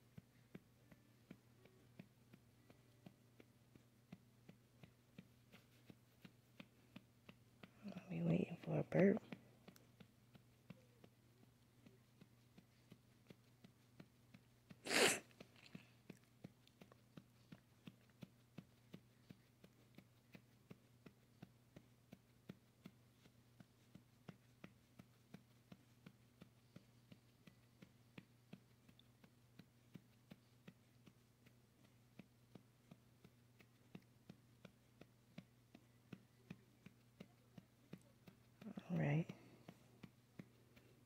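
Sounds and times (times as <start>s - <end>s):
low steady hum: 0.0s - 14.7s
soft pats on baby's back: 0.0s - 41.0s.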